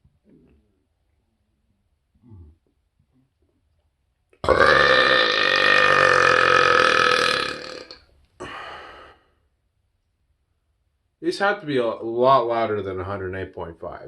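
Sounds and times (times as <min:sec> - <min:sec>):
man burping: 0:02.2 - 0:02.6, 0:04.4 - 0:08.8.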